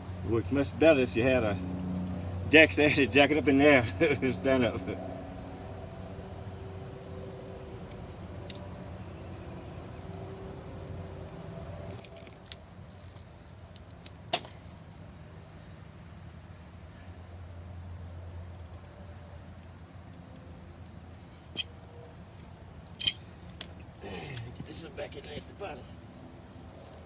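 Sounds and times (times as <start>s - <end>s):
low background hum: 0.0s - 13.8s, 14.7s - 27.0s
metallic clicks of tools: 21.6s - 21.8s, 23.0s - 23.7s.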